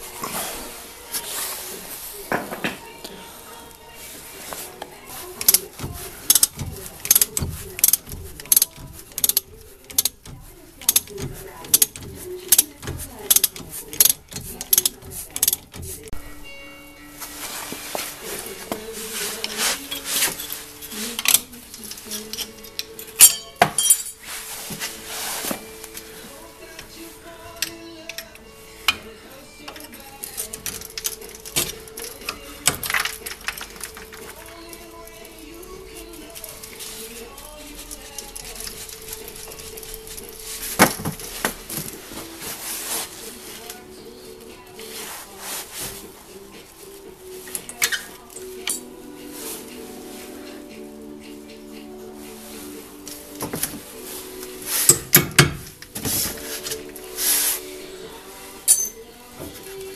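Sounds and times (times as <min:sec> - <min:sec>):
background music: 0:00.0 - 0:59.9
ratchet wrench clicking: 0:05.4 - 0:16.0.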